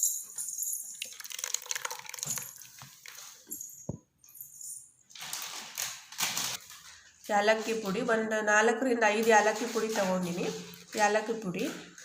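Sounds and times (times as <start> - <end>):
juice trickling and sloshing: 0.9 - 3.5.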